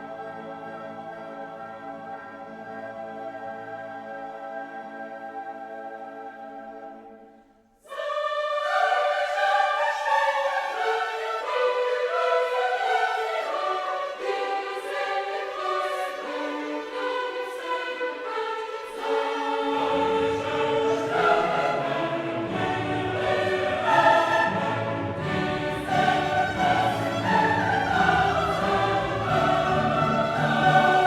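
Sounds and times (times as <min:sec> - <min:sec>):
choir singing: 0:00.0 - 0:31.0
orchestra playing: 0:16.2 - 0:31.0.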